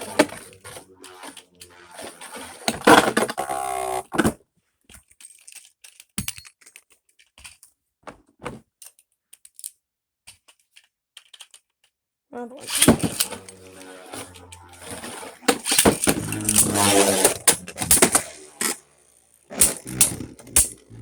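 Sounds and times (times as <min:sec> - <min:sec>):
spinning top launcher rattling: 0:12.7 - 0:21.0.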